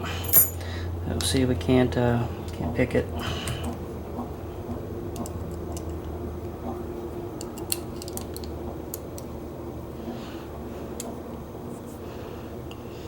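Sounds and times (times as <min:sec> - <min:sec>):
metallic clicks of lock picking: 0:07.4 - 0:09.3.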